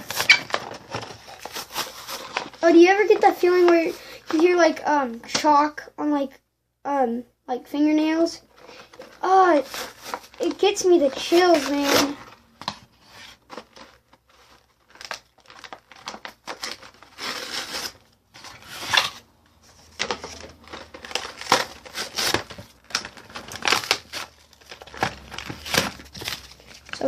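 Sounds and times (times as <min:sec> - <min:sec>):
packaging tearing and crinkling: 0:00.0 - 0:02.8, 0:08.6 - 0:12.4, 0:13.1 - 0:27.0.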